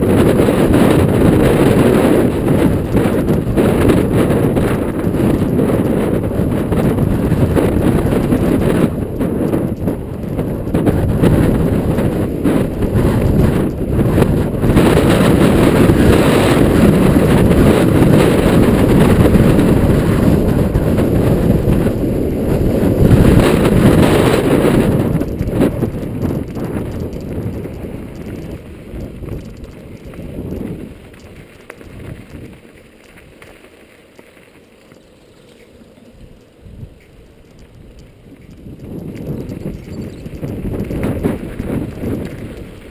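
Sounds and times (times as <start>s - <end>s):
wind buffeting microphone: 0.0s - 33.6s, 35.4s - 42.9s
mountain bike ride noise: 0.0s - 42.9s.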